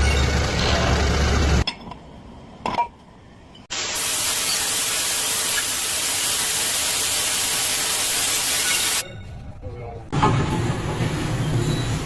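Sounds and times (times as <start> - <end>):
loud spraying hiss: 3.7 - 9.0.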